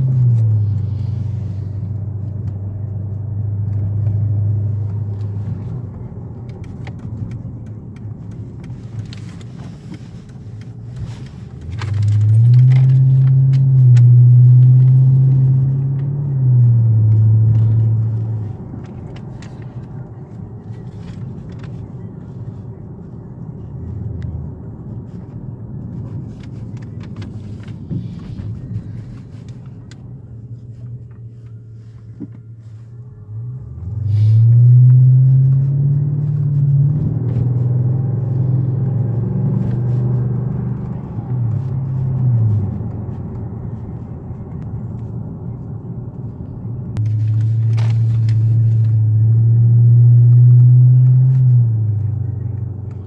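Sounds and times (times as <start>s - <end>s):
car engine rumbling: 0.0s - 53.0s.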